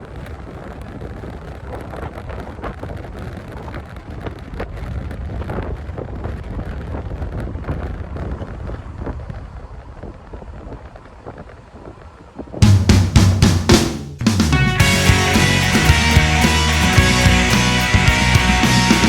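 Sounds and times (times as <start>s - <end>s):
wind buffeting microphone: 0.0s - 12.6s.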